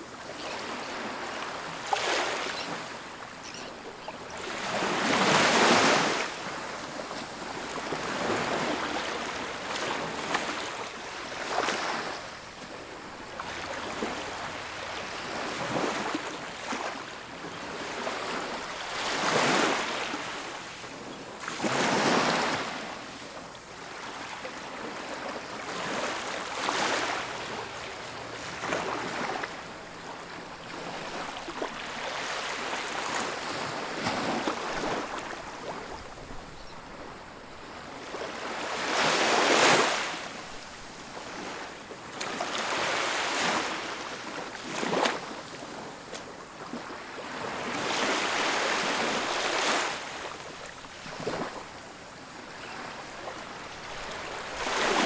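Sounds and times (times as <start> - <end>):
ocean waves breaking on beach: 0.0 - 55.0.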